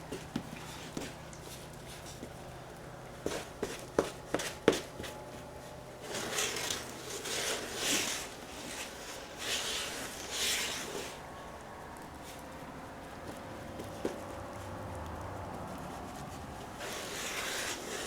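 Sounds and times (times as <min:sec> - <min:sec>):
spreader scraping on palette: 0:03.2 - 0:11.2, 0:15.7 - 0:18.0.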